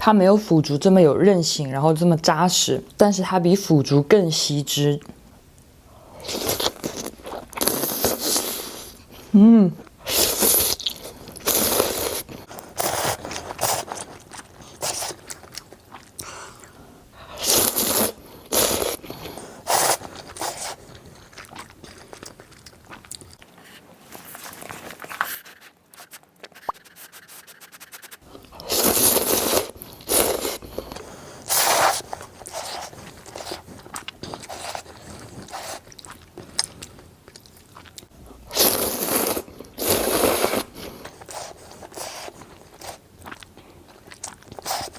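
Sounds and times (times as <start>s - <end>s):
chewing noodles: 10.0s - 26.9s, 28.1s - 44.9s.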